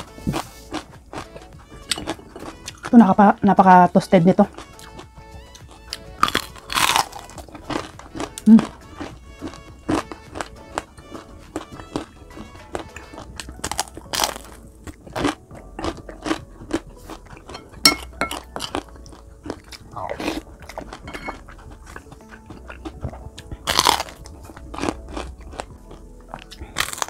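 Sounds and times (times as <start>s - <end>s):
chewing crispy fried food: 0.0s - 3.4s, 4.3s - 27.0s
faint background music: 0.0s - 27.0s.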